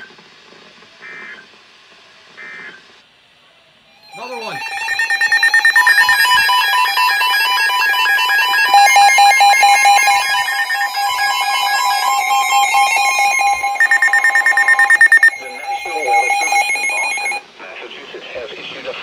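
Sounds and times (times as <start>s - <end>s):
steady alert tone: 4.0s - 17.4s
buzzing digital data bursts: 4.1s - 17.4s.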